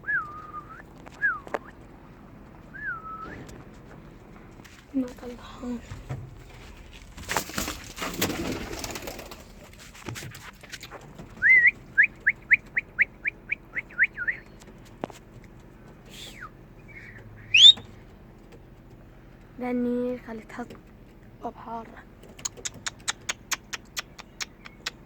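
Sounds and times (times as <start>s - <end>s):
bird whistles: 2.7s - 3.4s, 11.4s - 14.5s, 16.2s - 17.9s
high bird chirps: 16.8s - 17.9s.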